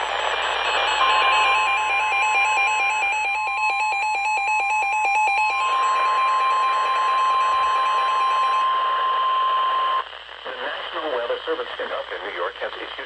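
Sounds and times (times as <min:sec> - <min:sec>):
steady warning alarm tone: 0:00.0 - 0:10.0
stepping electronic alarm beeps: 0:00.0 - 0:10.0
radio static: 0:08.6 - 0:13.0.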